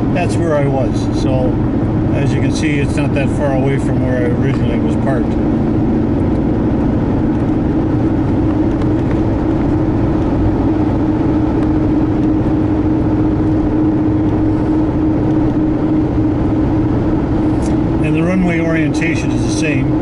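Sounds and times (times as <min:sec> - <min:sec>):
car engine and tyre drone: 0:00.0 - 0:20.0
constant low hum: 0:00.0 - 0:20.0.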